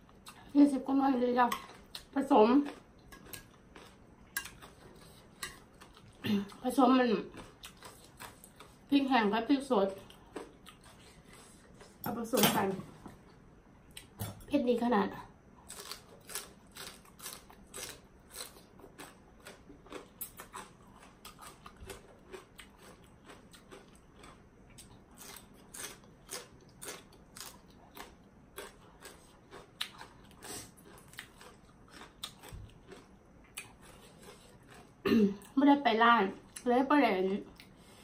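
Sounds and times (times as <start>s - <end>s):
person chewing crunchy food: 1.6s - 6.6s, 7.3s - 8.9s, 10.0s - 12.0s, 15.6s - 35.6s.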